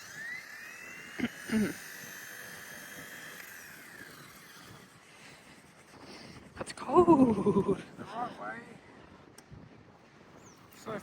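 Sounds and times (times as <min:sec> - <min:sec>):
small electric motors whining: 0:00.0 - 0:07.8.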